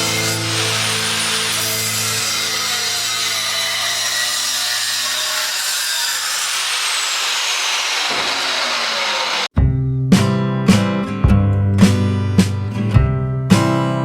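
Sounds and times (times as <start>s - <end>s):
angle grinder cutting: 0.0s - 9.5s.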